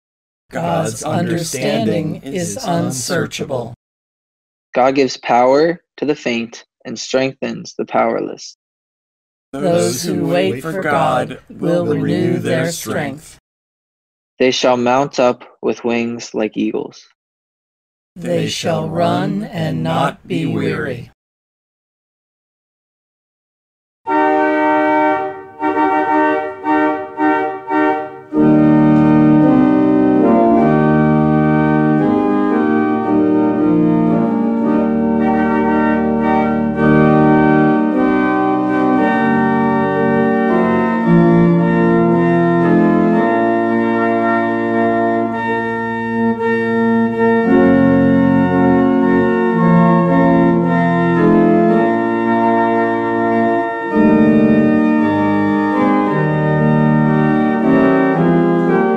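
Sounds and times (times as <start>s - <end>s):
organ chords: 0.5s - 3.7s, 9.6s - 13.4s, 18.2s - 21.0s, 24.1s - 58.9s.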